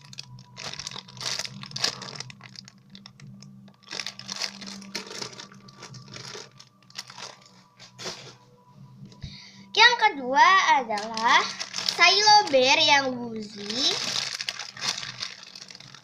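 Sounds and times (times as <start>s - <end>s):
squishy toy crinkling: 0.0s - 7.6s, 11.0s - 16.0s.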